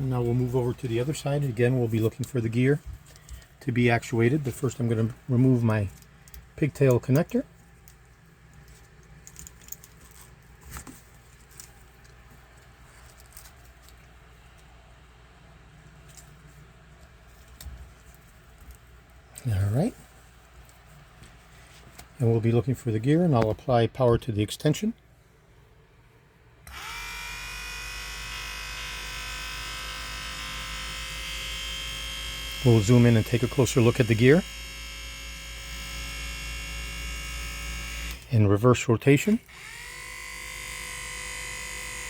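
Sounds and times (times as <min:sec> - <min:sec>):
low steady hum: 0:00.0 - 0:42.0
electric motor whining: 0:26.7 - 0:38.3, 0:39.5 - 0:42.0.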